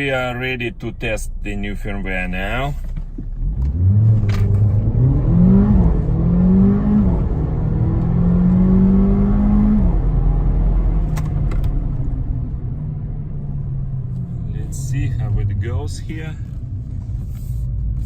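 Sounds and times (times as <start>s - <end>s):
car engine accelerating hard: 2.6s - 18.0s.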